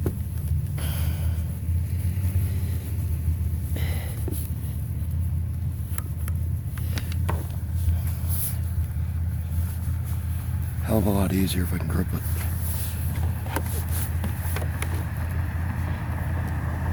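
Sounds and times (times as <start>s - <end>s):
vehicle engine idling: 0.0s - 16.9s.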